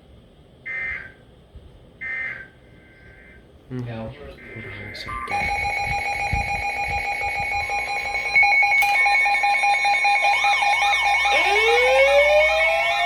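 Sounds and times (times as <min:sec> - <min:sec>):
two-tone alert signal: 0:04.4 - 0:13.0
warbling siren tone: 0:04.6 - 0:13.0
siren winding up: 0:05.2 - 0:13.0.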